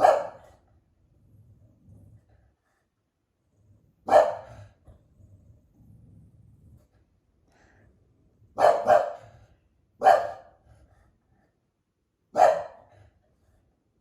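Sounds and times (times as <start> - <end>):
dog barking: 0.0 - 0.6, 4.1 - 4.7, 8.6 - 9.4, 10.0 - 10.6, 12.3 - 13.0.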